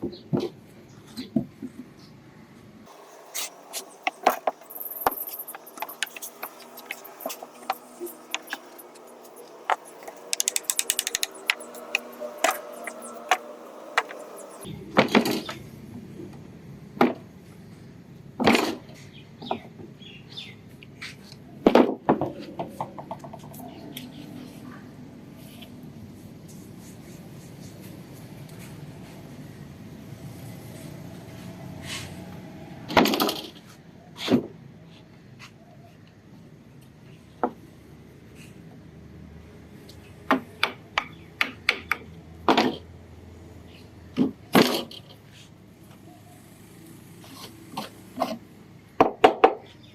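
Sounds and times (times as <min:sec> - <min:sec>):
rattling clicks: 0:09.7 - 0:12.7
knocks and taps on wooden bench: 0:10.3 - 0:11.6.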